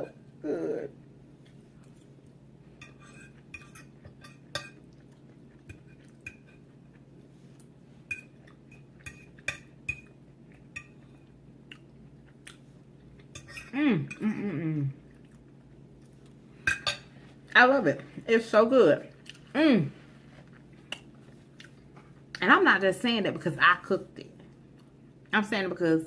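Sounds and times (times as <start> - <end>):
cutlery clinking on dishes: 2.8 - 4.8, 13.3 - 14.2.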